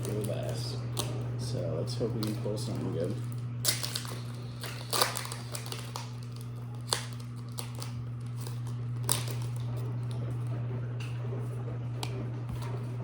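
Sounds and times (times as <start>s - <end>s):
foil pack crinkling and tearing: 0.0s - 1.1s, 1.9s - 10.2s
steady low hum: 0.0s - 13.0s.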